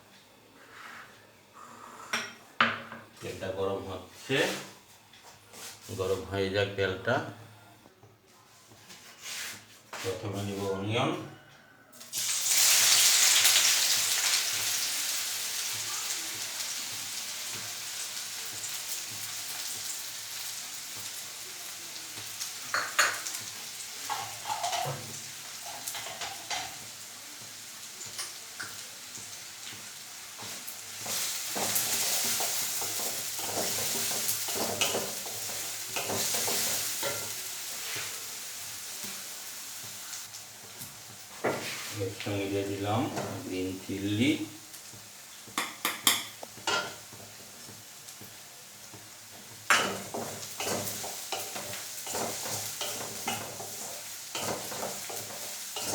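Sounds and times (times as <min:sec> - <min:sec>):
spatula scraping a pan: 0:08.8 - 0:09.8, 0:30.4 - 0:38.3, 0:41.3 - 0:42.0, 0:49.7 - 0:55.9
onions sizzling in hot oil: 0:11.9 - 0:55.9.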